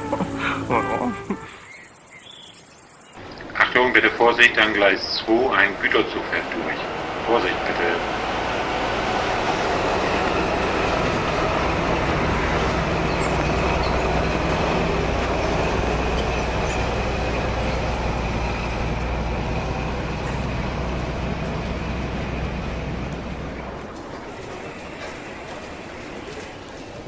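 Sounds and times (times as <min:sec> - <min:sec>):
freight train rumbling on rails: 0:00.0 - 0:27.0.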